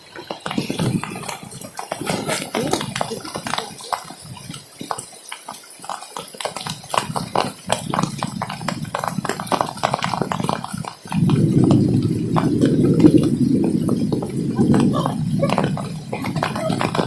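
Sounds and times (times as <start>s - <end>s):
steady rushing noise: 7.8s - 17.0s.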